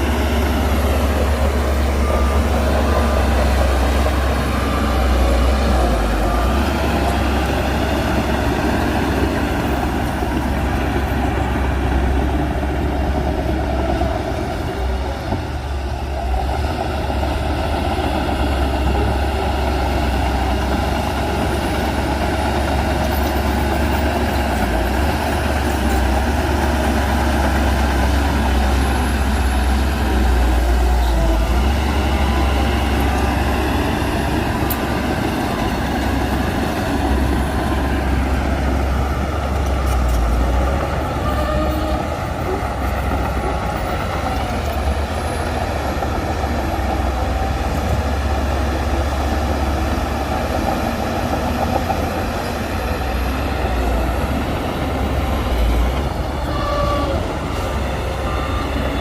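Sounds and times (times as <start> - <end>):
diesel machinery rumbling: 0.0 - 59.0.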